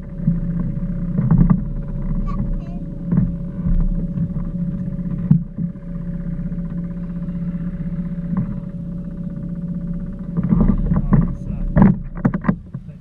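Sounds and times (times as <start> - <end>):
small boat motor humming: 0.0 - 13.0.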